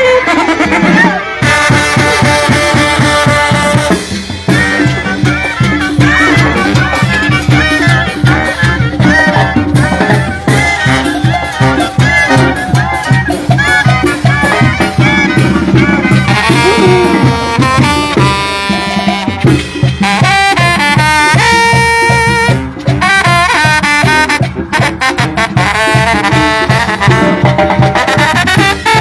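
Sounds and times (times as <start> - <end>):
brass band playing: 0.0 - 29.0
drums: 0.0 - 29.0
trumpets playing melody: 0.0 - 29.0
tuba bass pulsing: 0.0 - 29.0.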